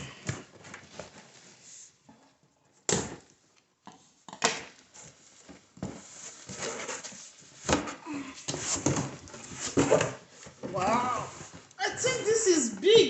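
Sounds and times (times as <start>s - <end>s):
cardboard rustling and scraping: 4.9s - 11.7s.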